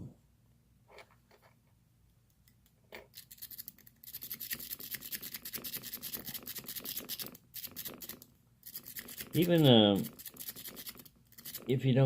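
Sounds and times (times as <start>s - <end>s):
lock pick scratching in padlock: 3.1s - 11.7s.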